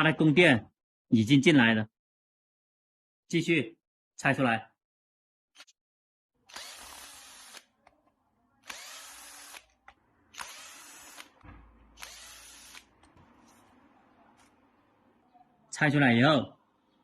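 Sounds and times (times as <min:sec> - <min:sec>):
cordless power driver whirring: 0:06.5 - 0:07.7, 0:08.6 - 0:13.1.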